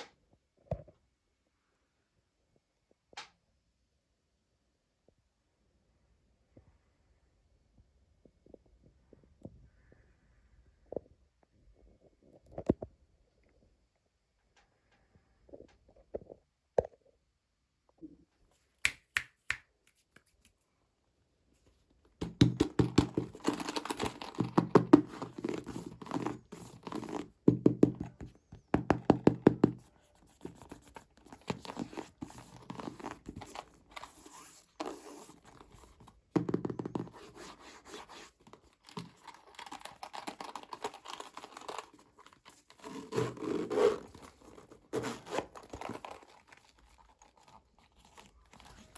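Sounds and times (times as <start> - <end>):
packaging crinkling and tearing: 38.1 - 48.9
packaging taps and clicks: 38.4 - 43.3.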